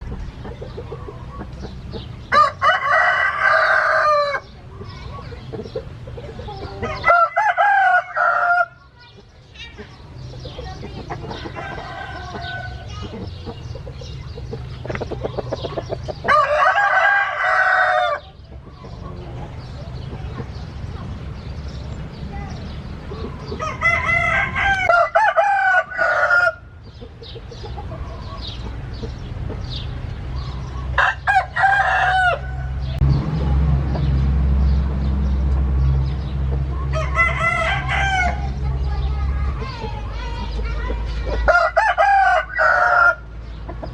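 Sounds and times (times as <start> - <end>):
chickens clucking: 0.0 - 43.9
rooster crowing: 2.3 - 4.4, 6.8 - 8.8, 11.4 - 12.8, 16.3 - 18.3, 23.6 - 26.7, 31.0 - 33.0, 36.9 - 38.4, 41.5 - 43.2.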